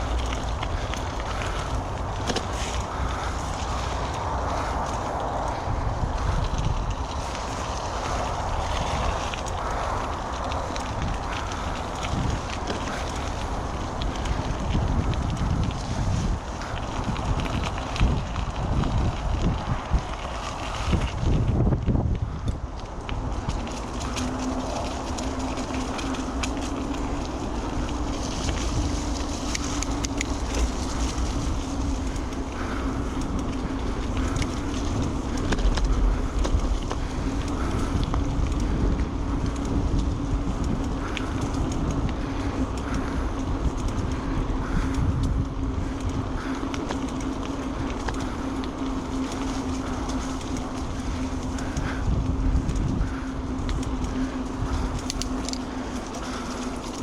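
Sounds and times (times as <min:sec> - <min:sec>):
bike tyres humming: 0:00.0 - 0:57.0
wind rumble on microphone: 0:00.0 - 0:57.0
faint clicks: 0:52.7 - 0:57.0.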